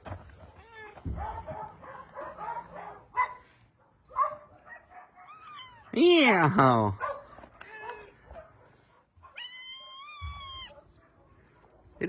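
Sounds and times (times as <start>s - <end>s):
dog barking and whining: 0.4s - 3.4s, 4.0s - 6.1s, 7.0s - 11.2s.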